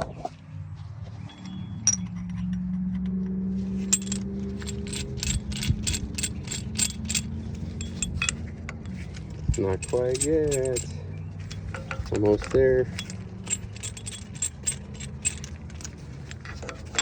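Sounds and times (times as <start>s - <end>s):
low hum: 1.2s - 17.0s
tool ratcheting clicks: 3.9s - 8.4s, 9.1s - 10.9s, 11.5s - 17.0s.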